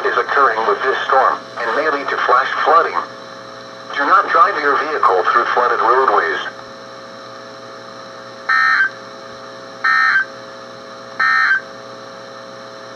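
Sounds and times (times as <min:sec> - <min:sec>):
steady radio hum: 0:00.0 - 0:12.9
digital data bursts: 0:08.5 - 0:08.9, 0:09.8 - 0:10.3, 0:11.2 - 0:11.6.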